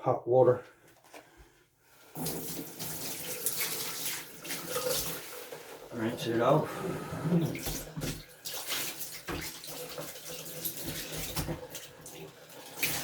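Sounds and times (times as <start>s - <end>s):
tap water splashing on boot: 7.6s - 11.9s.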